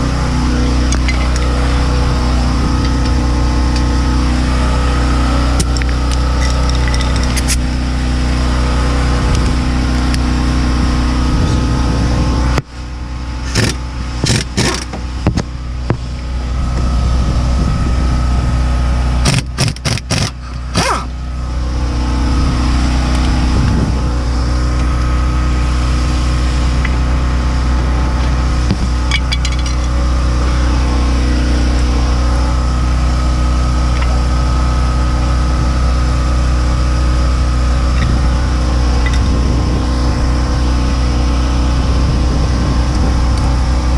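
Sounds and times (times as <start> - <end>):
low mechanical hum: 0.0 - 43.9
sharp clicks and knocks: 19.2 - 20.9.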